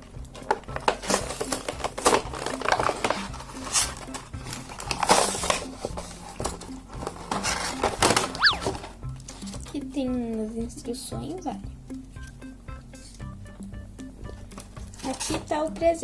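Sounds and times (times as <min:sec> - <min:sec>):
background music: 0:00.0 - 0:16.0
hands opening toy package: 0:00.8 - 0:06.0, 0:06.6 - 0:08.9.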